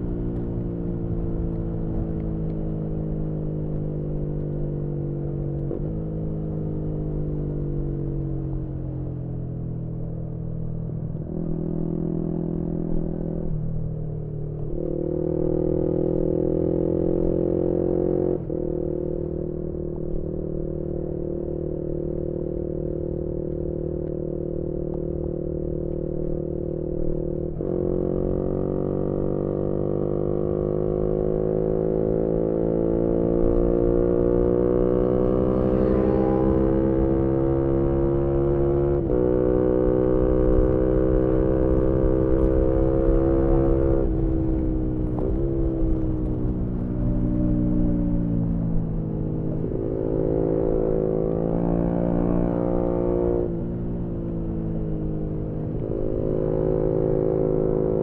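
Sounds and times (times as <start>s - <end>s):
motorcycle engine: 14.7s - 58.0s
wind rumble: 33.2s - 51.5s.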